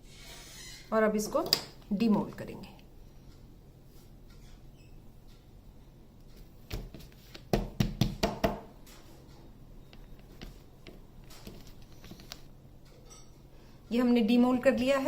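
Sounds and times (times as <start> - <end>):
knocks on silicone cake mould: 6.7 - 8.7.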